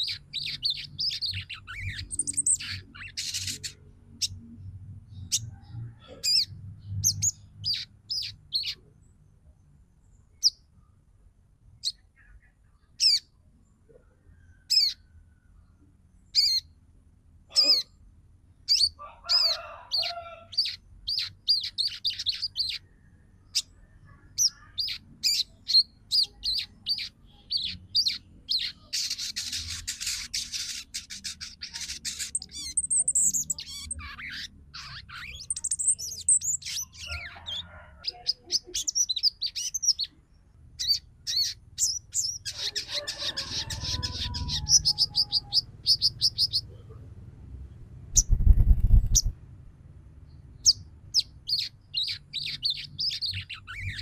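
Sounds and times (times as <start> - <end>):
bird chirping: 0.0 - 11.0, 11.8 - 16.8, 17.5 - 47.0, 47.6 - 49.4, 50.2 - 54.0.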